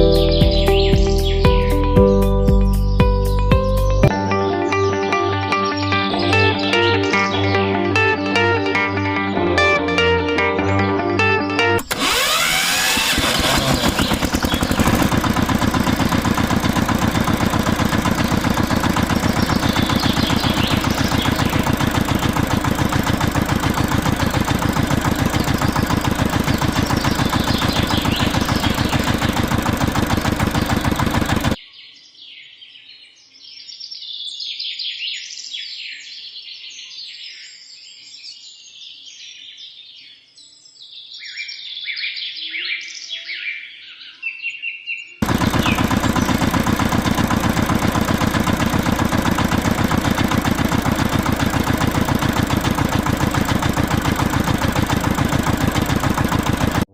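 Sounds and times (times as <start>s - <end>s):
birds chirping: 0.0s - 3.9s, 11.8s - 32.1s, 45.0s - 56.9s
motor running with fast rattle: 11.8s - 31.6s, 45.2s - 56.9s.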